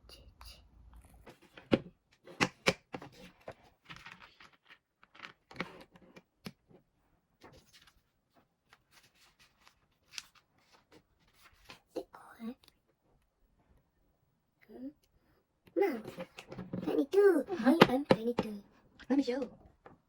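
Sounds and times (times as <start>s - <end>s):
clicks and rustling of toy blocks: 1.0s - 12.0s, 16.0s - 20.0s.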